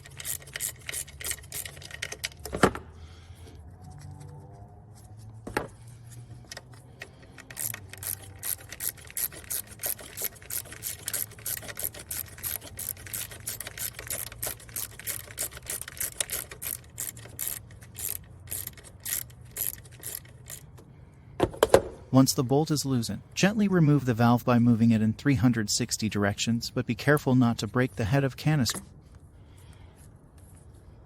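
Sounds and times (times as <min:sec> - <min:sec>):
socket ratchet clicking: 0:00.0 - 0:02.4, 0:07.0 - 0:20.8.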